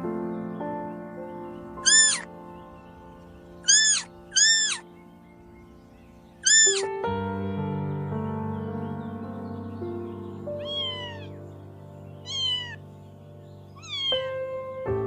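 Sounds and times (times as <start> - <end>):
background music: 0.0 - 15.0
kitten mewing: 1.8 - 2.3, 3.6 - 4.8, 6.4 - 6.9, 10.6 - 11.4, 12.2 - 12.8, 13.8 - 14.3.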